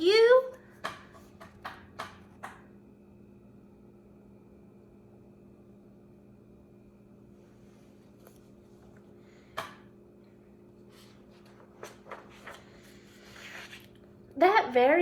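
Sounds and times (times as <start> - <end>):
steady low hum: 0.0 - 15.0
paper rustle: 10.9 - 14.0.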